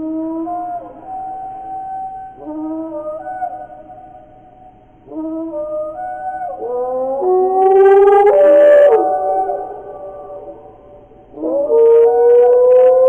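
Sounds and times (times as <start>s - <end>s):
deep creature calls: 5.2s - 10.6s.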